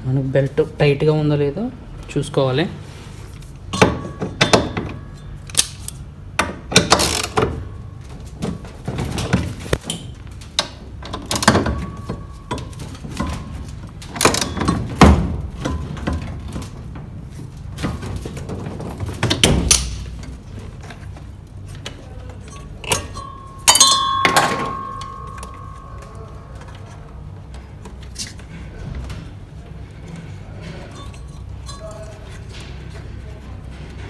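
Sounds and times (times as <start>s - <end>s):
knocks and clatter on washing machine: 3.7s - 5.3s, 6.4s - 21.2s, 22.9s - 26.9s
ringing metallic clank: 22.4s - 27.3s, 30.8s - 32.3s.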